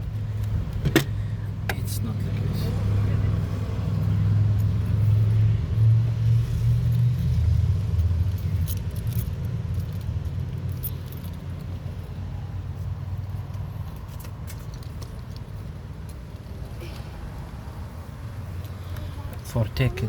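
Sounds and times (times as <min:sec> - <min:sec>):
vehicle engine humming: 0:00.0 - 0:20.0
light metallic clinks: 0:08.0 - 0:12.2.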